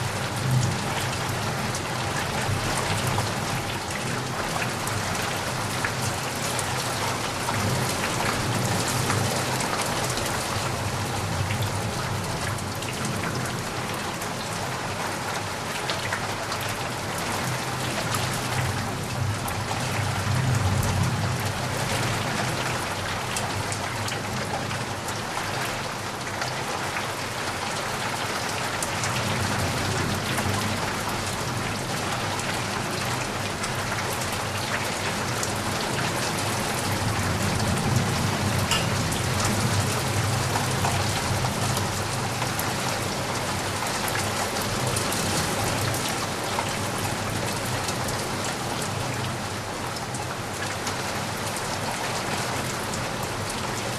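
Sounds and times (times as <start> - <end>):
rain tapping on window: 27.9 - 49.1.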